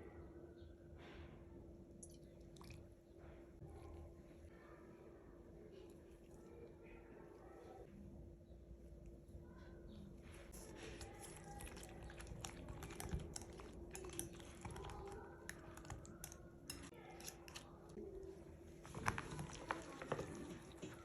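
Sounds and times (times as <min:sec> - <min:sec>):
kitchen utensils and dishes clinking: 0:10.5 - 0:17.9.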